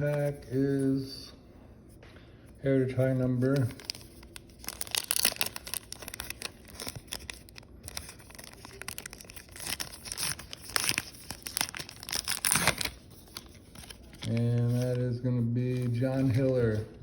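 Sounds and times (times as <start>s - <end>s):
wrapper ripping and crinkling: 3.4s - 15.0s.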